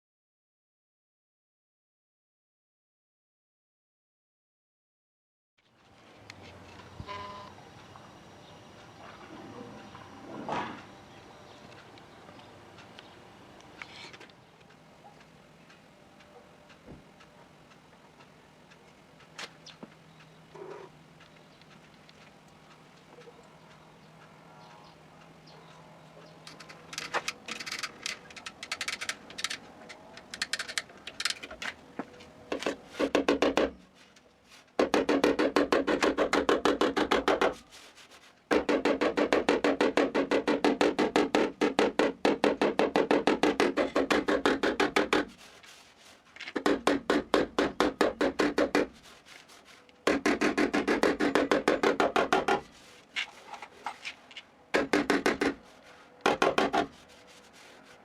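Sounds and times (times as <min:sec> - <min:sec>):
tool rasping sheet metal: 0:34.8 - 0:54.1.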